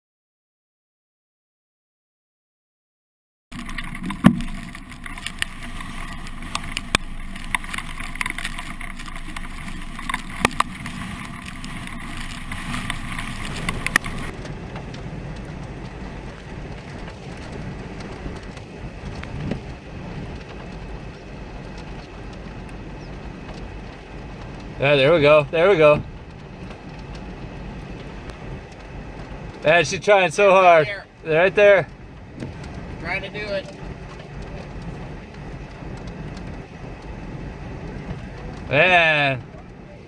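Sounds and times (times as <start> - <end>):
sharp clicks and knocks: 3.5 - 29.7, 31.8 - 38.7
wind and vehicle rumble: 3.5 - 40.0.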